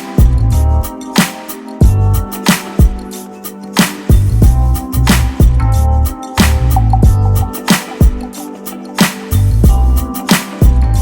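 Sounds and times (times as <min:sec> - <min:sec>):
rhythm and blues music: 0:00.0 - 0:11.0.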